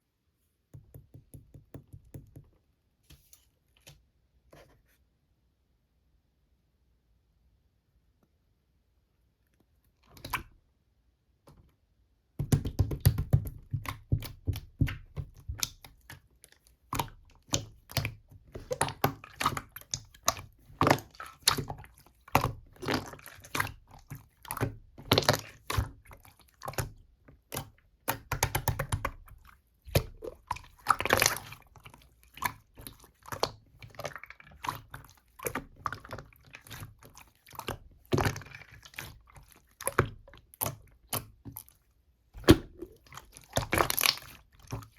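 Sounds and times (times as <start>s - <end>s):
slime squished by hand: 12.4s - 41.8s, 42.4s - 44.9s.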